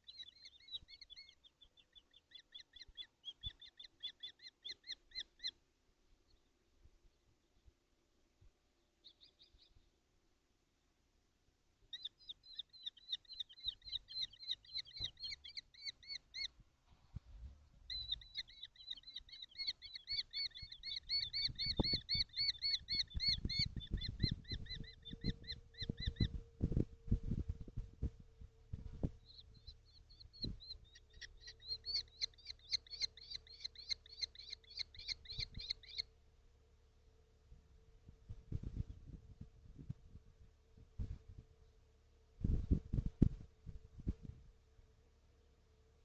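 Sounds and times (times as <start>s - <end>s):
young kestrels calling: 0.0s - 5.6s, 8.9s - 9.9s, 11.9s - 16.6s, 17.9s - 26.5s, 29.0s - 36.2s.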